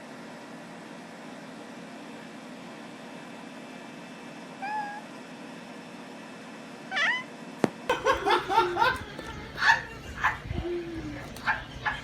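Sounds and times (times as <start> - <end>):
faint steady hum: 0.0 - 12.0
cat meowing: 4.6 - 5.1, 6.9 - 7.3.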